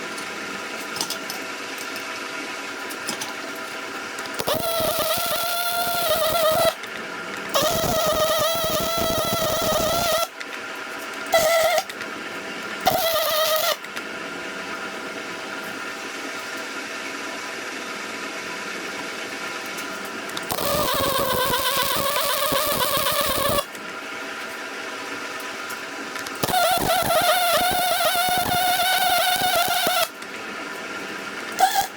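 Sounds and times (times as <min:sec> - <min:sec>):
wire feed whine: 0:00.0 - 0:31.9
welding arc crackle: 0:02.9 - 0:12.0, 0:12.8 - 0:14.0, 0:19.8 - 0:23.8, 0:25.7 - 0:30.4, 0:31.4 - 0:31.9.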